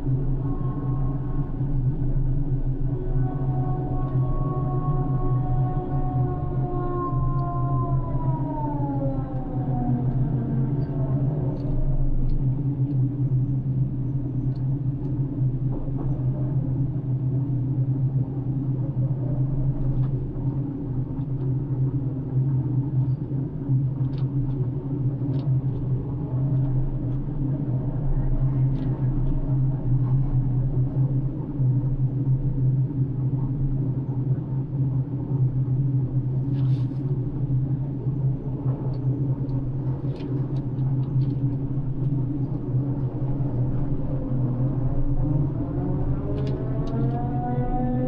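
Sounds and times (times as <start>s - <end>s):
crane engine low drone: 0.0s - 48.0s
high whine gliding downward: 37.2s - 48.0s.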